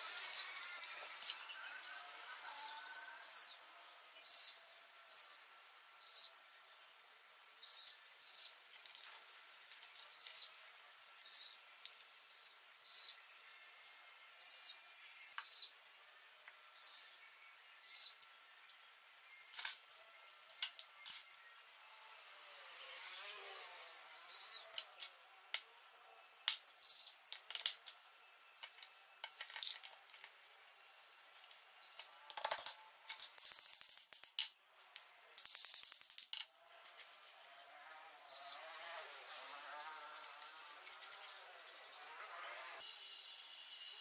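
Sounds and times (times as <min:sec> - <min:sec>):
metal tools clinking and tapping: 0:28.6 - 0:30.3.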